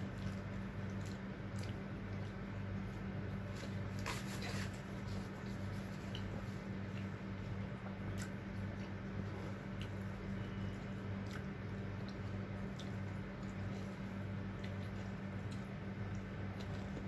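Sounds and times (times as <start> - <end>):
low electrical hum: 0.0 - 17.0
person chewing food: 0.0 - 17.0
crunch: 0.1 - 7.1.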